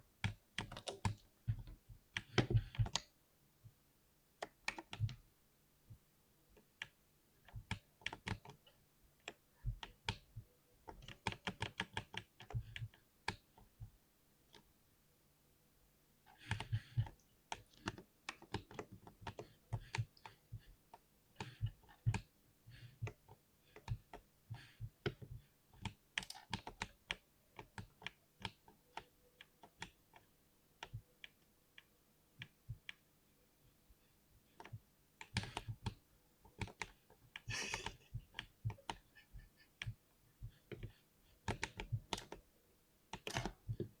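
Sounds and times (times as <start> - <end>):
mechanical keyboard typing: 0.2 - 1.2, 25.8 - 30.0, 43.1 - 44.0.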